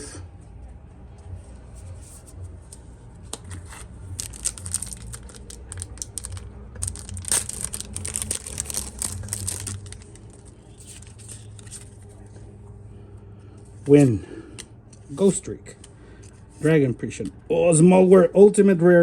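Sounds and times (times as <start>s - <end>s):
foil wrapper crinkling and tearing: 3.5s - 12.0s.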